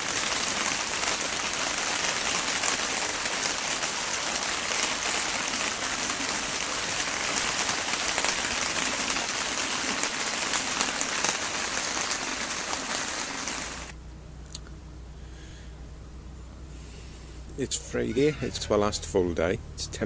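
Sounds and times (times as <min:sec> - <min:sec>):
heavy rain falling: 0:00.0 - 0:13.9.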